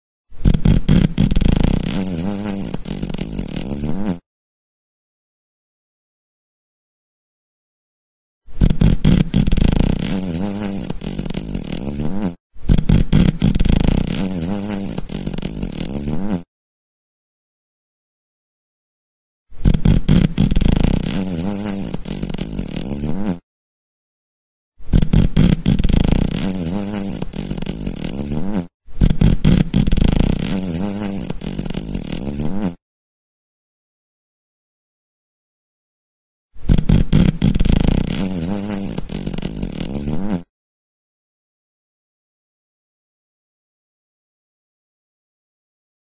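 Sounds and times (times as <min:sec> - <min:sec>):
comic fart sound effect: 0:00.3 - 0:04.2, 0:08.5 - 0:16.5, 0:19.6 - 0:23.4, 0:24.8 - 0:32.8, 0:36.6 - 0:40.5.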